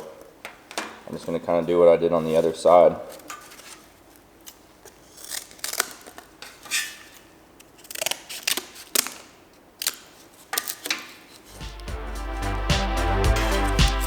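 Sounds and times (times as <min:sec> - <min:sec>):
hand snips cutting: 0:07.6 - 0:11.9.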